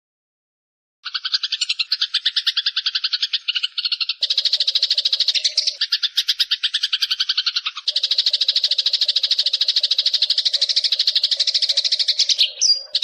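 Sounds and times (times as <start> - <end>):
sparrow chattering call: 1.0 - 13.0.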